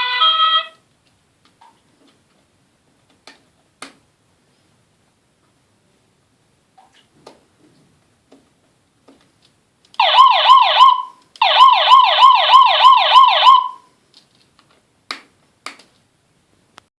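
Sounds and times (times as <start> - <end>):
electronic horn siren warble: 0.0 - 0.8, 10.0 - 13.8.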